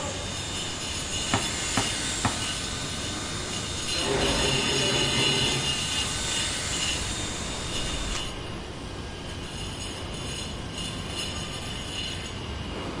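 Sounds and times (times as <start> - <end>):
heavy machinery running: 0.0 - 9.4
high metallic squeal: 0.0 - 12.7.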